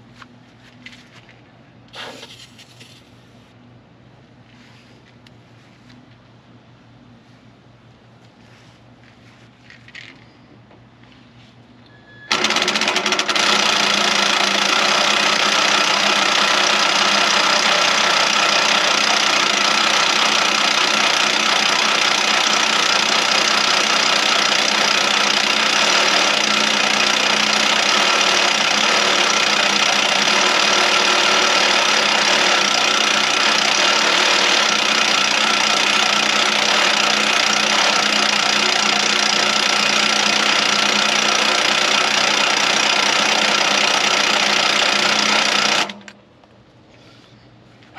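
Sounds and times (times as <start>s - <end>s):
power drill boring steel: 12.3s - 46.0s.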